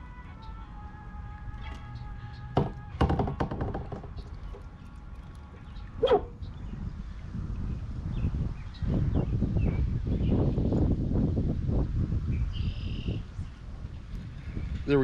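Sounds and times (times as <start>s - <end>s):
sharp knocks: 2.6s - 4.3s
short bark-like call: 6.0s - 6.3s.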